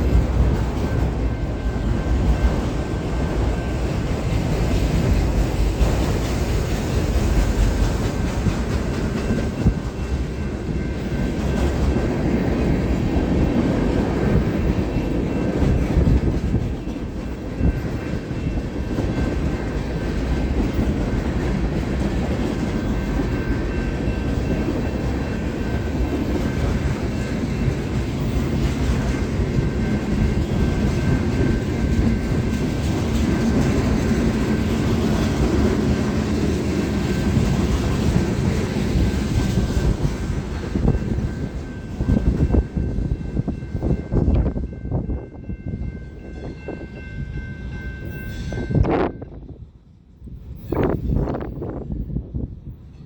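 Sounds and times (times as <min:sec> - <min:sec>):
freight train rolling past: 0:00.0 - 0:53.0.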